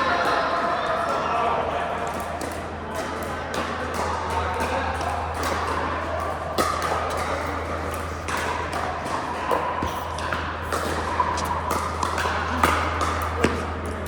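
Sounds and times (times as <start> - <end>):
ball bouncing: 6.6 - 14.0
low hum: 9.6 - 14.0.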